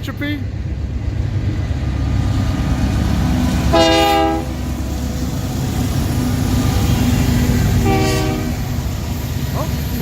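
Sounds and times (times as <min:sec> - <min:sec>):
freight train locomotive rumbling: 0:00.0 - 0:10.0
train horn blast: 0:03.7 - 0:04.6, 0:07.8 - 0:08.7.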